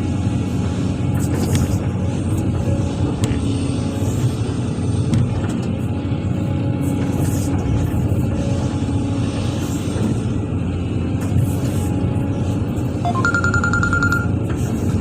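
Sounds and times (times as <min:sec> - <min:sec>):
excavator diesel engine rumbling: 0:00.0 - 0:15.0
electronic ringtone melody: 0:13.0 - 0:14.4
rapid repeating beep: 0:13.0 - 0:14.4.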